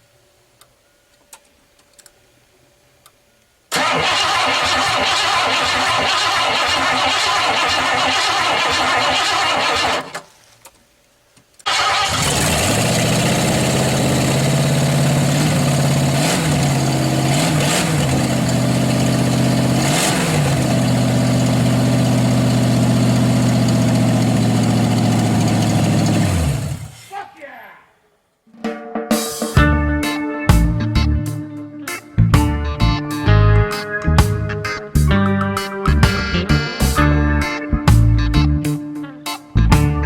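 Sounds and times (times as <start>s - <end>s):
engine shutting off: 3.7s - 10.2s, 11.7s - 27.0s
car engine starting and running: 3.7s - 10.3s, 11.7s - 27.0s.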